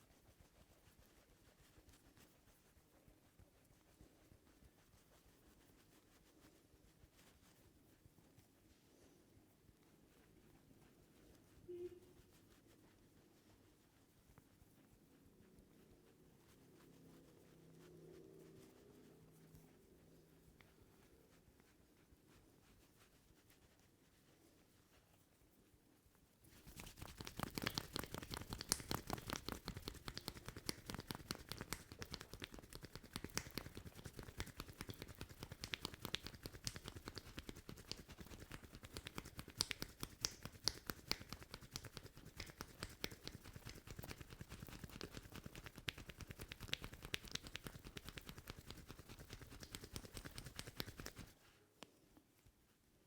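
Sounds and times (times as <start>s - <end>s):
hands patting a head: 26.4s - 51.4s.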